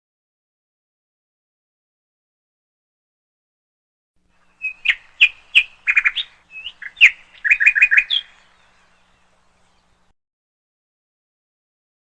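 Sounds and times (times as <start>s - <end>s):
bird chirping: 4.3s - 10.1s.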